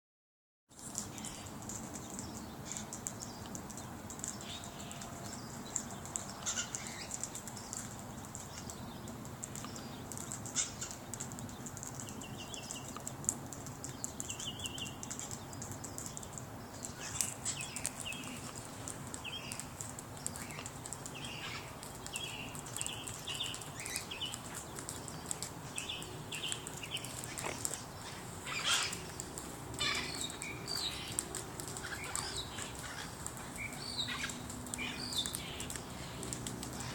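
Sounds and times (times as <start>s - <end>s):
steady background noise: 0.7s - 36.9s
parrots squawking: 27.2s - 29.0s, 29.8s - 30.3s.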